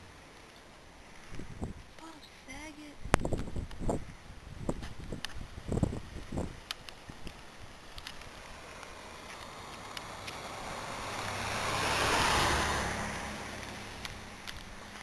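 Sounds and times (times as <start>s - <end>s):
low engine hum: 7.2s - 15.0s
tyres hissing through slush: 7.7s - 14.0s.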